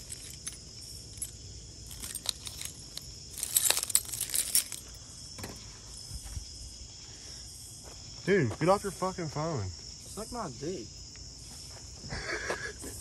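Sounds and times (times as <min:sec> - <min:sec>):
keys jangling: 0:00.0 - 0:05.0.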